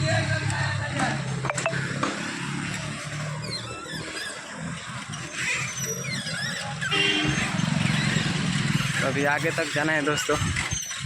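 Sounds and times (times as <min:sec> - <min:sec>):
low rumble of traffic: 0:00.0 - 0:11.0
high squeaks and chirps: 0:03.4 - 0:11.0.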